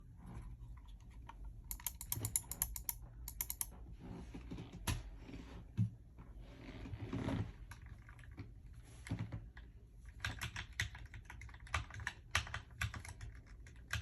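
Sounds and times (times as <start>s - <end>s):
mechanical keyboard typing: 1.7s - 3.7s, 10.1s - 14.0s.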